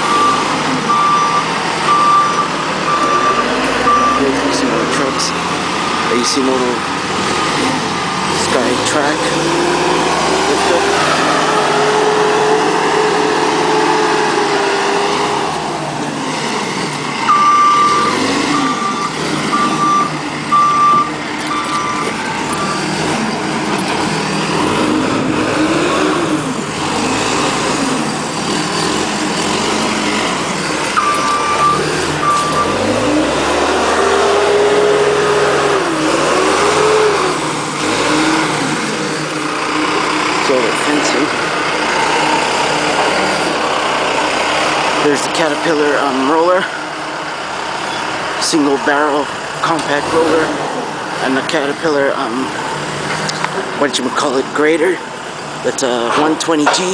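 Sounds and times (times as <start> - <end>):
reversing alarm beeping: 0.0 - 4.6, 17.2 - 23.0, 30.9 - 33.2
heavy machine engine revving: 0.0 - 56.9.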